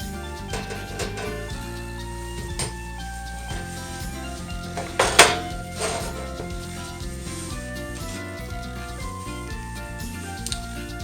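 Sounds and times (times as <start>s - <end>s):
background music with beat: 0.0s - 11.0s
soft scraping noise: 3.5s - 8.5s.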